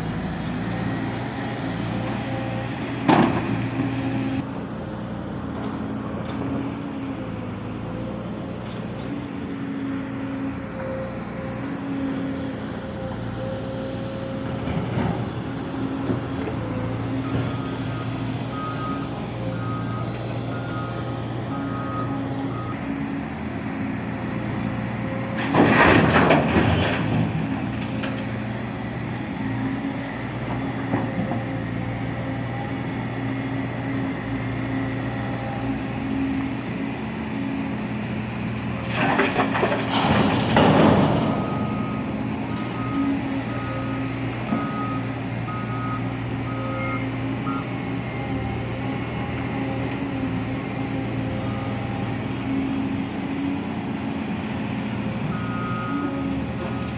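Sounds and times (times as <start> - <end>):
diesel vehicle running: 0.0 - 56.9
reversing alarm beeping: 17.2 - 23.0, 40.6 - 47.8, 55.3 - 56.9.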